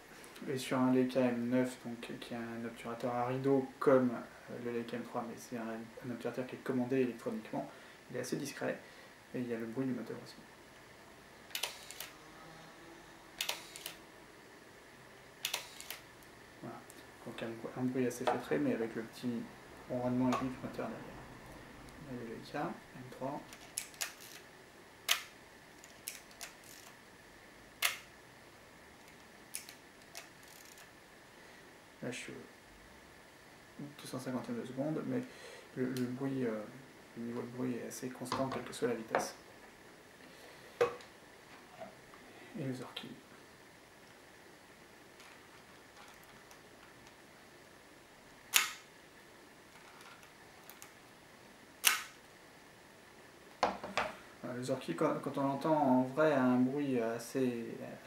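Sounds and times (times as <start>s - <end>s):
camera shutter clicks: 11.5s - 12.1s, 13.4s - 14.0s, 15.4s - 16.0s.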